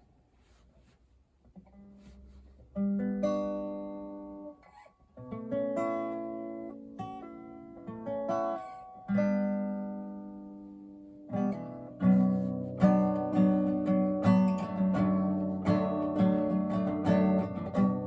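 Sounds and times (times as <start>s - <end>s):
acoustic guitar chords ringing: 5.3s - 18.0s.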